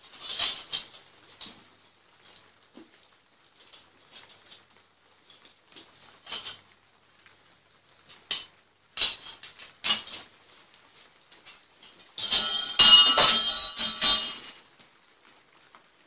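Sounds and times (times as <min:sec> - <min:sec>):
metal tools clinking and clattering: 0:00.0 - 0:01.5, 0:09.0 - 0:10.3, 0:11.4 - 0:14.6
metallic ringing: 0:12.2 - 0:14.6.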